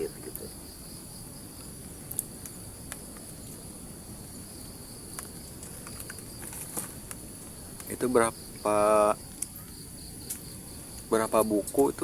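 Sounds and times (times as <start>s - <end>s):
forest insects chorus: 0.0s - 12.0s.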